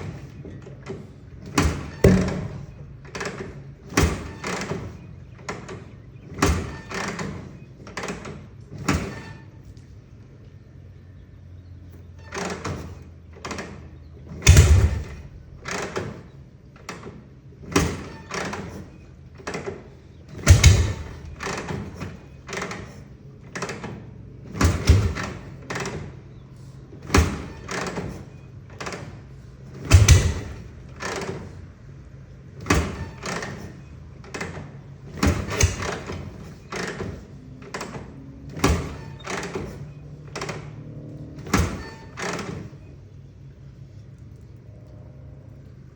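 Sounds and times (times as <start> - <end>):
loud engine pops: 1.5 - 4.9, 14.4 - 16.4, 20.4 - 22.9, 29.8 - 31.5, 35.2 - 40.7.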